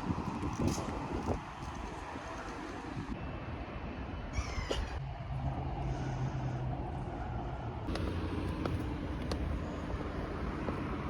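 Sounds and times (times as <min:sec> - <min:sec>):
low engine rumble: 0:07.7 - 0:11.0.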